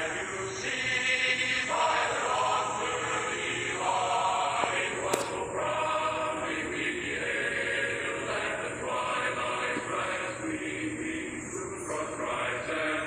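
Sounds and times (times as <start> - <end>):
choir singing an anthem: 0.0 - 13.0
sharp click: 5.1 - 5.4.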